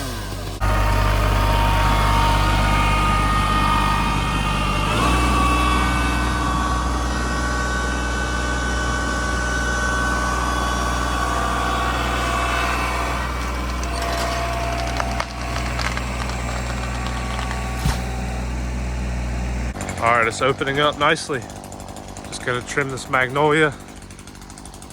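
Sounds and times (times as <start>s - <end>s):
tractor engine running: 0.0s - 24.9s
tree trunk cracking and splintering: 0.7s - 7.9s, 9.8s - 18.8s.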